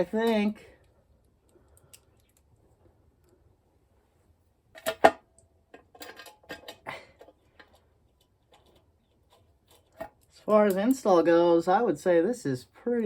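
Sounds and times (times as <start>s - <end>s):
metal tools clinking: 4.8s - 7.8s.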